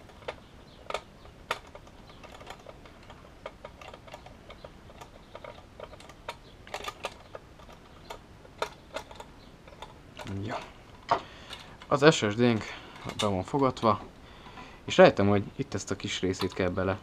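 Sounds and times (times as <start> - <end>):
small metal clicks and taps: 0.1 - 12.0, 16.3 - 16.8.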